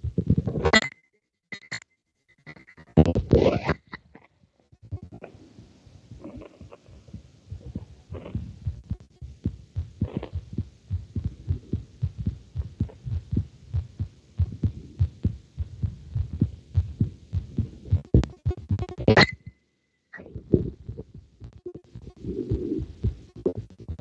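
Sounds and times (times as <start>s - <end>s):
heart beating: 7.5s - 19.4s, 20.4s - 24.0s.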